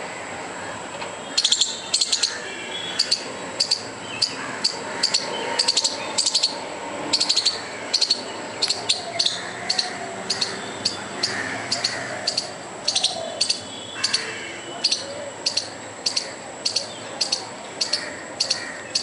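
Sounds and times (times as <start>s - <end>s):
squirrel alarm chirps: 1.4s - 19.0s.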